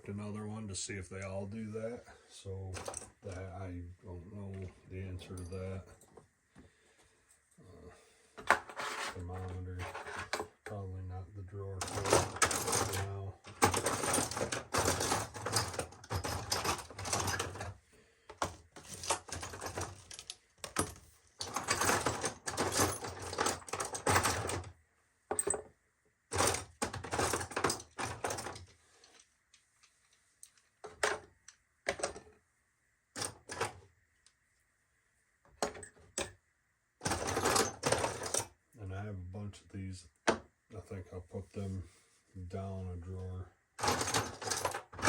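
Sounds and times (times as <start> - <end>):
hand tools clattering: 11.8 - 17.7.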